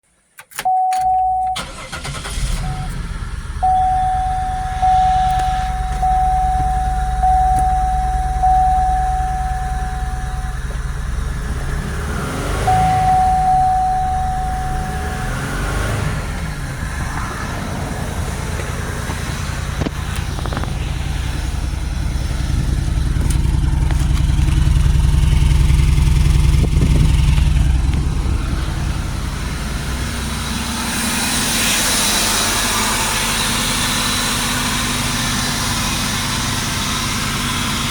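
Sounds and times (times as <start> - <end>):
car engine misfiring: 0.5 - 37.9
dashboard warning chime: 0.6 - 3.0, 3.6 - 11.8, 12.5 - 15.8.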